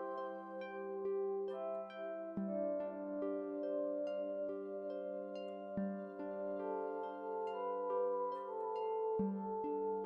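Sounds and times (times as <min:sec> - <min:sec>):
gentle instrumental music: 0:00.0 - 0:10.0.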